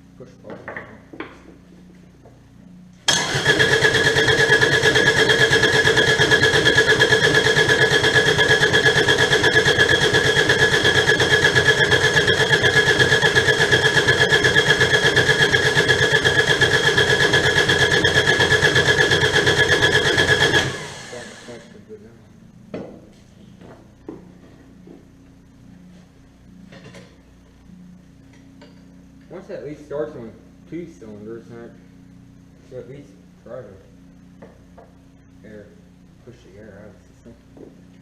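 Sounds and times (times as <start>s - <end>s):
diesel engine cranking on starter: 3.1s - 21.7s.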